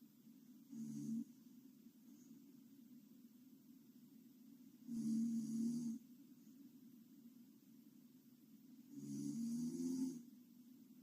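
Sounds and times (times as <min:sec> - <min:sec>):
woman snoring: 0:04.9 - 0:06.0, 0:08.9 - 0:10.3.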